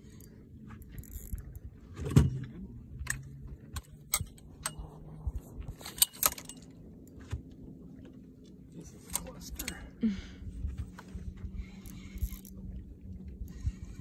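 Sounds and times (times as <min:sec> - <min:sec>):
fishing gear clicking and rattling: 0:00.0 - 0:07.5, 0:08.8 - 0:09.9, 0:10.8 - 0:12.8.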